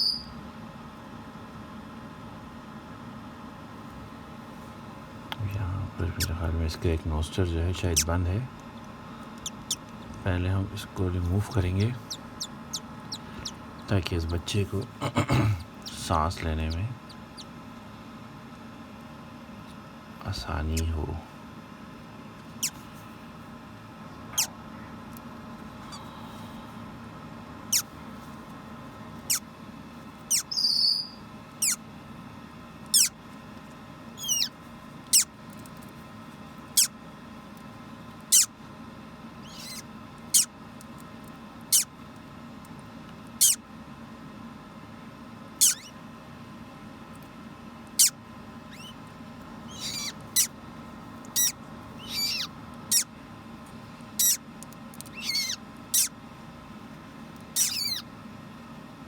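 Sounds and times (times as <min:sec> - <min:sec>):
parrot chick peeping: 0:00.0 - 0:00.4, 0:09.2 - 0:14.9, 0:15.6 - 0:17.6, 0:22.4 - 0:22.8, 0:24.1 - 0:24.6, 0:27.6 - 0:27.9, 0:29.2 - 0:29.5, 0:30.2 - 0:31.8, 0:32.8 - 0:33.2, 0:34.2 - 0:35.3, 0:36.7 - 0:37.0, 0:38.3 - 0:38.6, 0:39.4 - 0:40.5, 0:41.7 - 0:41.9, 0:43.4 - 0:43.6, 0:45.6 - 0:46.0, 0:47.9 - 0:50.6, 0:51.2 - 0:53.1, 0:54.1 - 0:56.2, 0:57.4 - 0:58.1
faint steady hum: 0:00.0 - 0:59.0.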